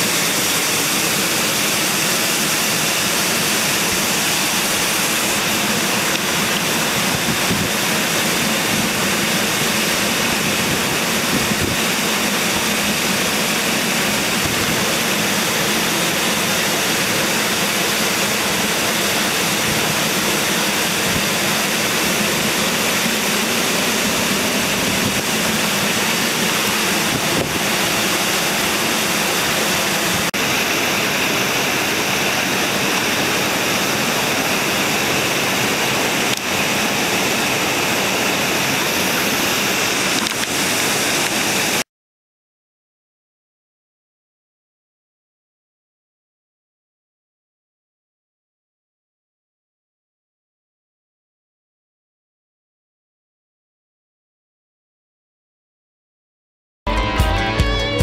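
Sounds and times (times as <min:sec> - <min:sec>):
stream water rushing over rocks: 0:00.0 - 0:41.8.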